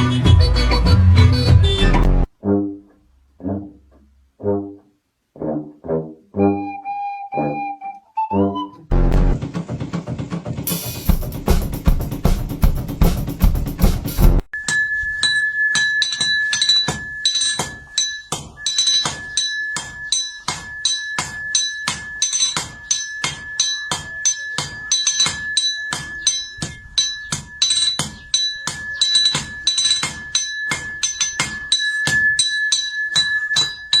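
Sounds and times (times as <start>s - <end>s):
rapid sharp clinking strikes: 10.7s - 34.0s
high ringing tone: 14.5s - 34.0s.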